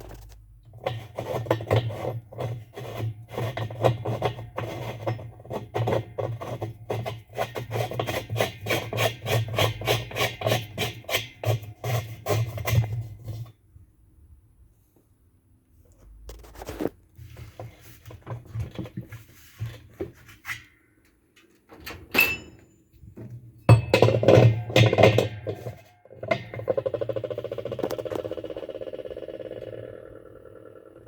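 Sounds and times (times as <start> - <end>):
knocks and clatter of parts: 21.0 - 28.8.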